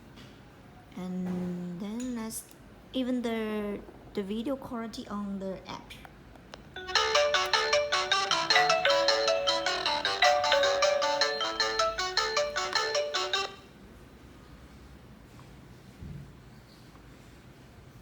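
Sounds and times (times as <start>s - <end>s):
intercom ringtone melody: 6.8s - 13.7s.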